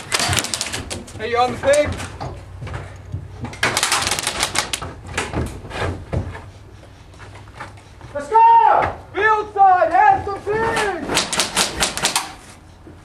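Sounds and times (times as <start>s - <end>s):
airsoft guns firing: 0.0s - 0.9s, 3.6s - 4.8s, 11.1s - 12.4s.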